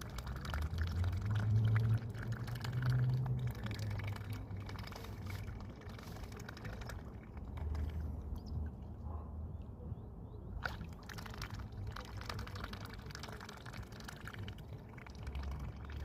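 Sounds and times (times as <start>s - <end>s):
swan snuffling: 4.2s - 8.2s.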